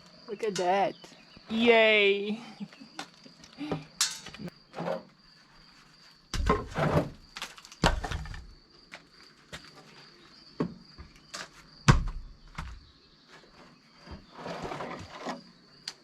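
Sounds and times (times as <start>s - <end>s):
heavy knocks with scraping: 6.3s - 7.2s, 7.8s - 8.6s.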